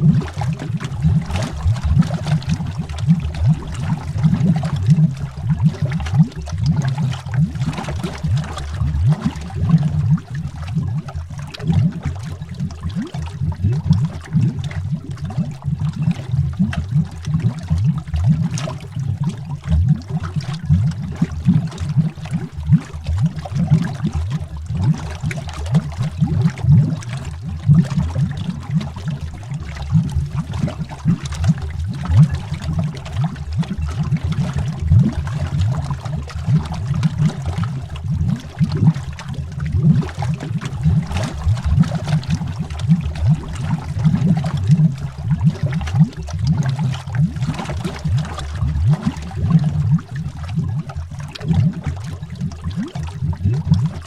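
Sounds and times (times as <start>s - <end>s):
underwater bubbling: 0.0s - 54.0s.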